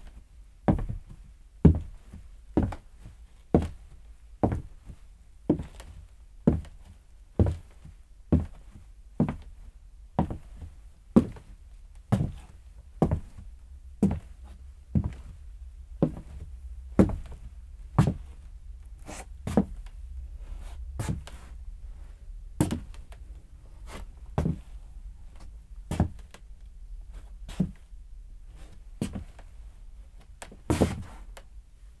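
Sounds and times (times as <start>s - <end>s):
footsteps on wooden floor: 14.0s - 14.3s, 14.9s - 15.4s.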